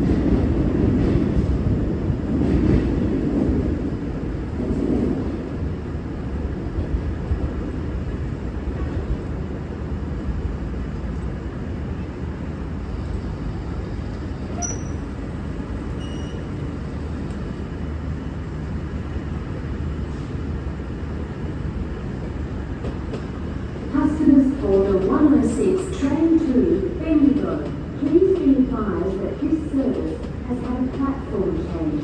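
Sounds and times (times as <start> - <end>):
diesel train engine rumble: 0.0 - 32.0
faint high squeaks: 14.5 - 15.2, 16.0 - 16.6.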